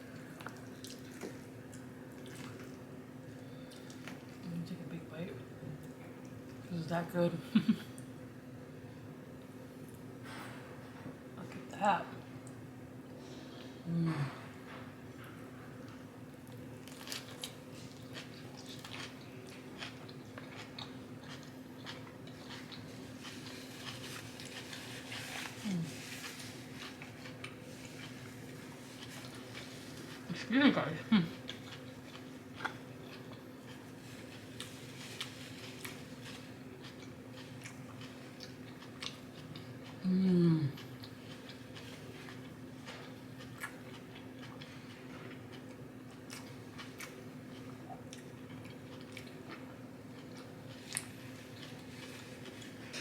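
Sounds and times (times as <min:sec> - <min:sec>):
person chewing: 0:00.0 - 0:04.4, 0:16.5 - 0:30.3, 0:31.3 - 0:53.0
steady low hum: 0:00.0 - 0:53.0
person humming mm: 0:13.8 - 0:14.4, 0:40.0 - 0:40.8.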